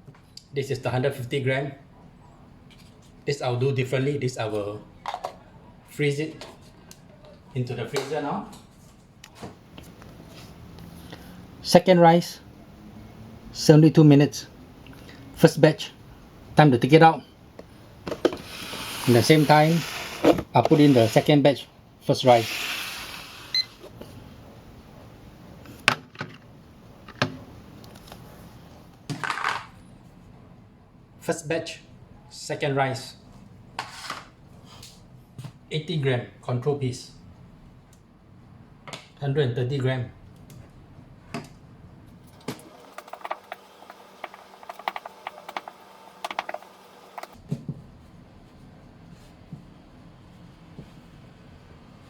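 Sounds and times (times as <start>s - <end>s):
rustling scrape: 18.2s - 21.5s, 22.2s - 24.0s, 42.6s - 47.4s.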